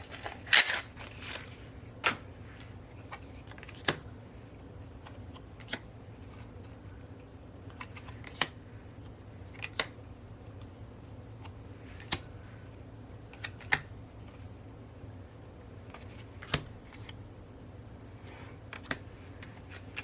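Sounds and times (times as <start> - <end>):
paper cards rustling and tapping: 0.0 - 4.1, 18.7 - 20.0.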